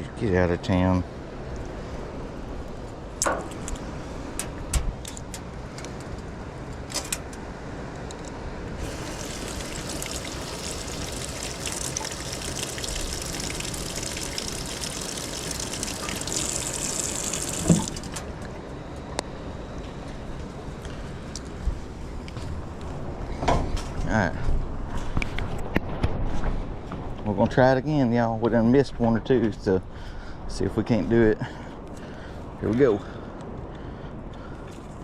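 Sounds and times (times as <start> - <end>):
surf washing and hissing: 8.7 - 18.2.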